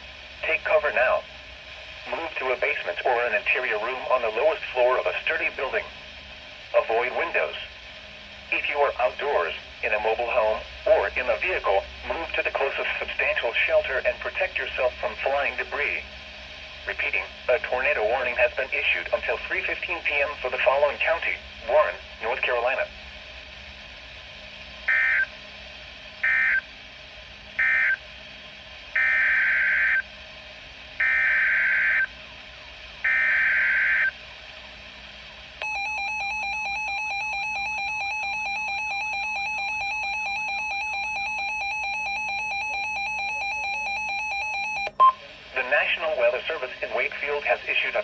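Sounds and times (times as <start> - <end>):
electronic attention tone: 35.6 - 45.2.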